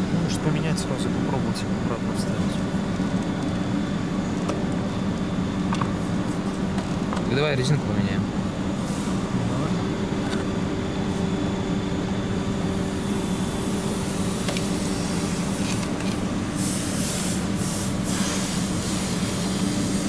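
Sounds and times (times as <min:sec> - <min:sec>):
steady mechanical hum: 0:00.0 - 0:20.0
compressed air hissing in bursts: 0:08.8 - 0:09.4, 0:12.8 - 0:20.0.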